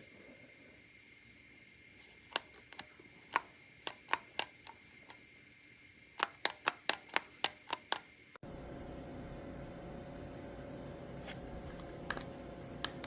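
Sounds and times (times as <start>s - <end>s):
sharp clicks: 2.0s - 5.2s, 6.2s - 8.1s.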